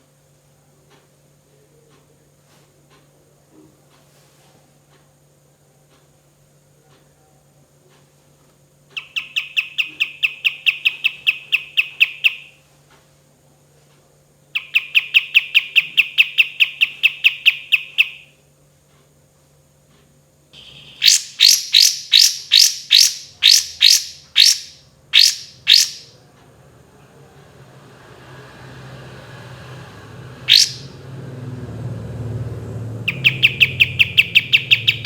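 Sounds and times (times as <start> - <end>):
songbird trilling: 9.0 - 12.6, 14.5 - 18.3, 20.6 - 26.2, 30.4 - 31.0, 33.0 - 35.0
bird whistling sharp notes: 20.6 - 26.1, 30.5 - 31.0, 33.1 - 35.0.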